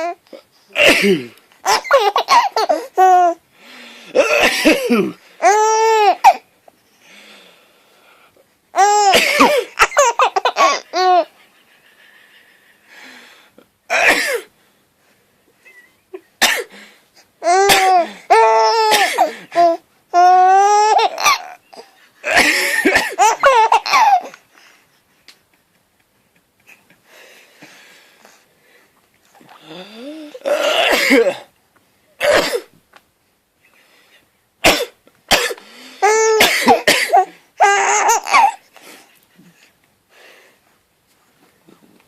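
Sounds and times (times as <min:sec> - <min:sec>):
adult sneezing: 0:00.7 - 0:01.4, 0:04.1 - 0:05.2, 0:29.4 - 0:31.5
adult coughing: 0:00.8 - 0:02.8, 0:04.2 - 0:05.2, 0:09.0 - 0:10.8, 0:13.9 - 0:14.5, 0:16.4 - 0:16.8, 0:17.6 - 0:18.2, 0:18.8 - 0:19.5, 0:22.2 - 0:24.2, 0:30.4 - 0:31.5, 0:32.2 - 0:32.7, 0:34.6 - 0:35.6, 0:36.4 - 0:37.3
baby giggling: 0:01.6 - 0:03.4, 0:08.8 - 0:11.4, 0:17.4 - 0:24.4, 0:37.2 - 0:38.6.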